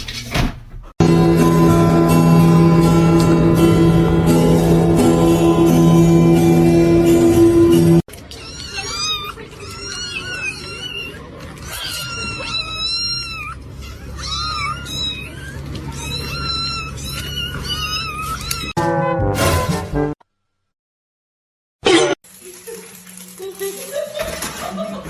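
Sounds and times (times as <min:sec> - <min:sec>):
background music: 0:01.0 - 0:08.0
kitten mewing: 0:08.4 - 0:18.7.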